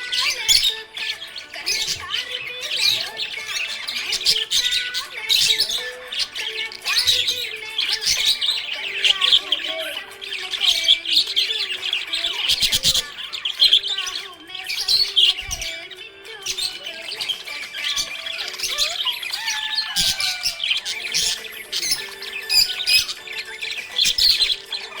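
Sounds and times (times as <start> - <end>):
budgerigars chirping: 0.0 - 25.0.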